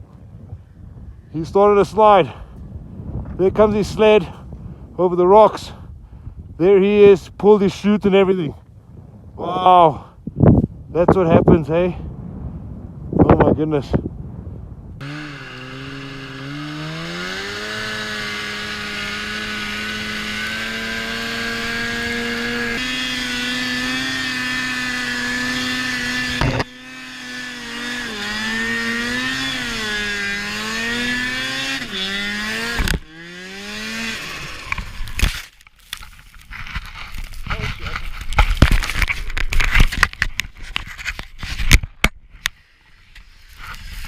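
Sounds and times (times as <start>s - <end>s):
snowmobile engine running hard: 15.0s - 35.0s.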